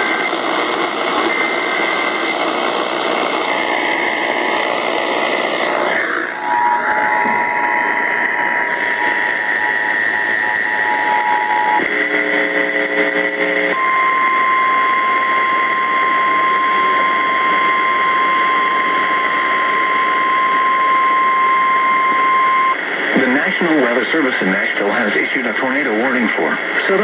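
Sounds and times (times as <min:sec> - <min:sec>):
radio hiss: 0:00.0 - 0:14.3, 0:14.9 - 0:27.0
steady warning alarm tone: 0:13.8 - 0:22.8.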